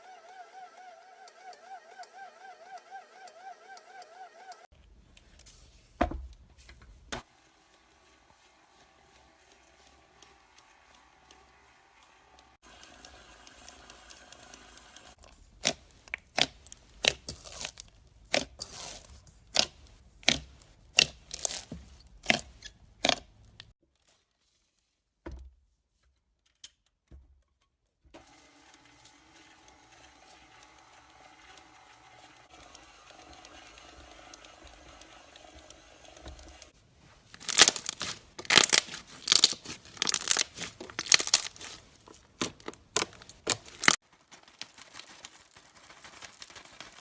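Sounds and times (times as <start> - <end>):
slime handling noise: 15.2 - 24.6, 36.8 - 47.0
slime popping and crackling: 15.4 - 23.6, 37.4 - 47.0.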